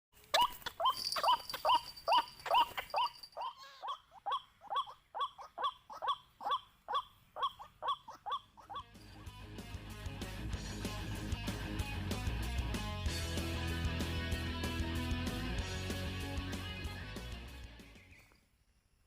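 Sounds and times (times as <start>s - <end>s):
waterhen calling: 0.2s - 8.9s.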